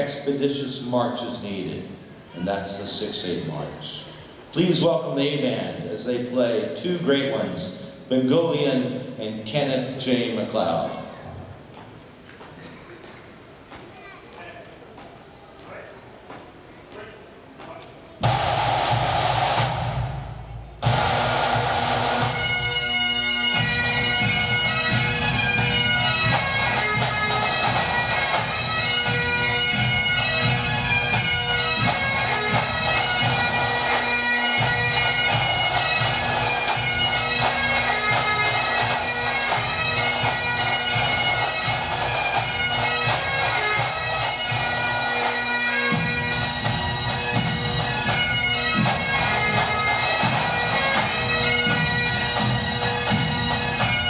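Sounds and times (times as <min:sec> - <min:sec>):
drums beating: 0:17.6 - 0:54.0
bagpipes playing march: 0:18.2 - 0:54.0.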